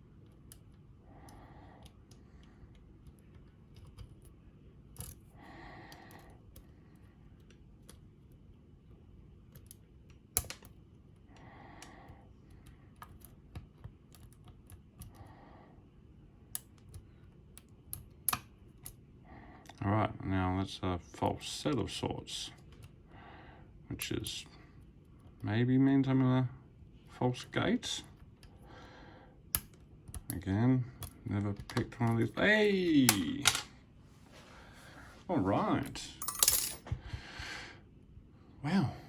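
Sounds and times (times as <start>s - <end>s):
lock pick clicking: 29.5s - 30.4s.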